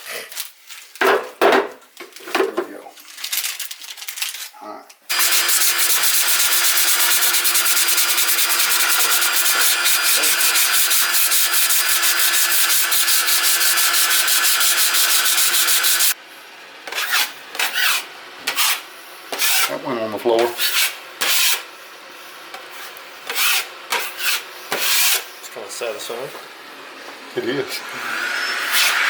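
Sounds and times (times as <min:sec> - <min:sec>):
spray paint hissing: 0:05.1 - 0:16.2.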